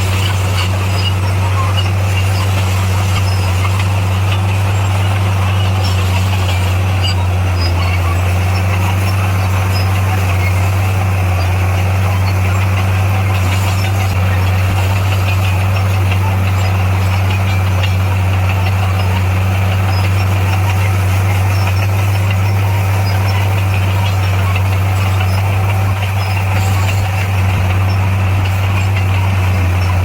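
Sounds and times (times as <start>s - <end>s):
diesel engine droning: 0.0s - 30.0s.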